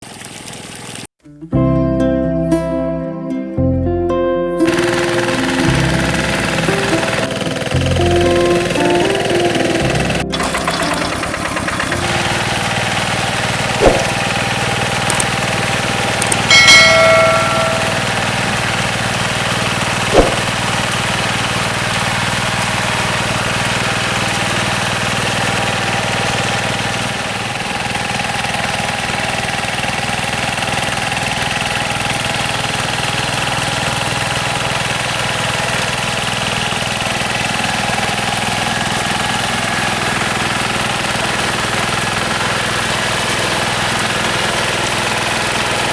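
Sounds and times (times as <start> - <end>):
diesel engine running: 4.6 - 45.9
sharp knocks: 13.7 - 14.4, 16.2 - 18.7, 19.9 - 20.8
short high note: 16.5 - 18.6.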